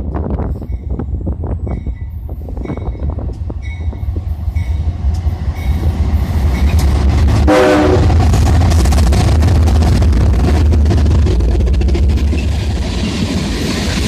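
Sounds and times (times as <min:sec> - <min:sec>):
freight train approaching: 0:00.0 - 0:14.0
wind buffeting microphone: 0:00.0 - 0:14.0
locomotive horn blast: 0:07.5 - 0:08.3.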